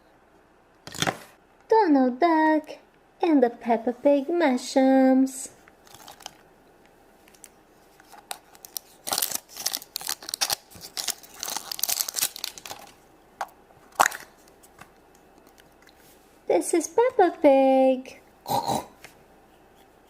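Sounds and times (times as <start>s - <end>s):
wrapper crinkling and tearing: 5.8s - 6.4s, 7.3s - 13.0s.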